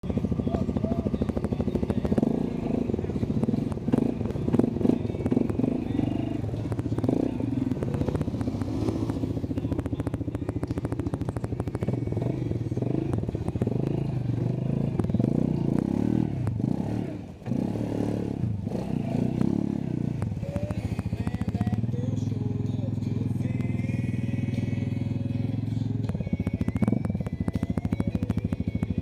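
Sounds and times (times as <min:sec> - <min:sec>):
atv engine revving: 0:00.0 - 0:29.0.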